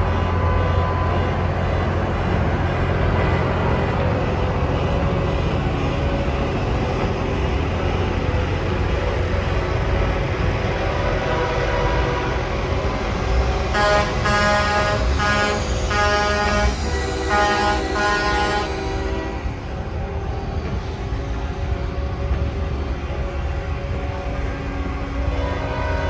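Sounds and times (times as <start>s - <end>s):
vehicle horns honking: 13.7s - 19.5s.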